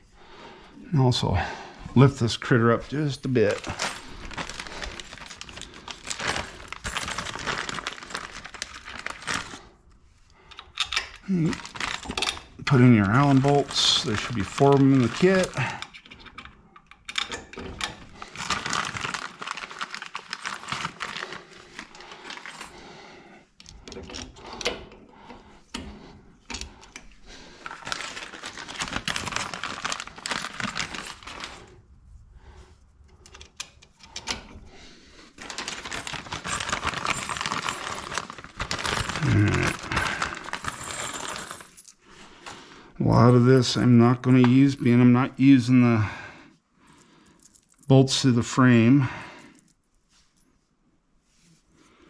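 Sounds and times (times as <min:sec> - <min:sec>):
metal hardware clinking: 0:10.5 - 0:18.2.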